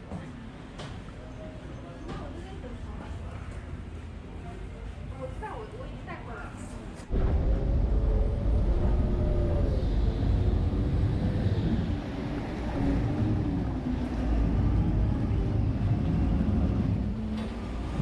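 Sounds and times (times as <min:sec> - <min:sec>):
boat engine rumbling: 0:07.1 - 0:18.0
wind buffeting microphone: 0:07.1 - 0:18.0.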